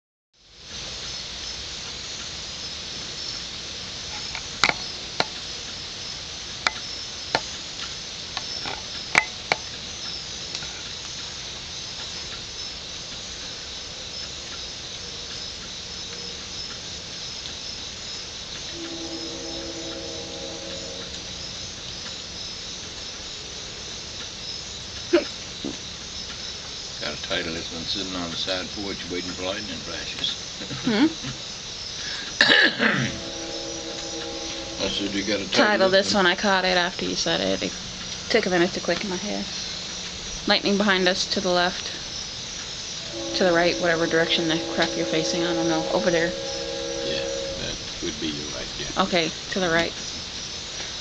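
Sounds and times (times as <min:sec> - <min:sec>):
insects chirping: 0:00.5 - 0:51.0
low humming tone: 0:18.7 - 0:22.4, 0:32.4 - 0:36.8, 0:42.9 - 0:49.2.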